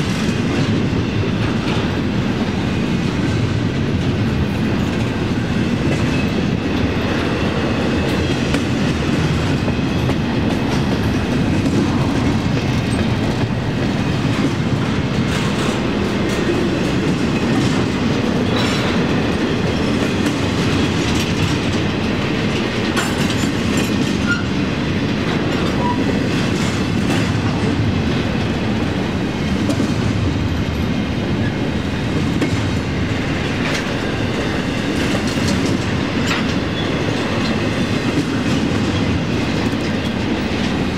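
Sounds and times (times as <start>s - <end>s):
freight train wheels rumbling: 0.0s - 40.9s
wheels clicking over rail joints: 5.8s - 24.6s, 34.7s - 40.9s.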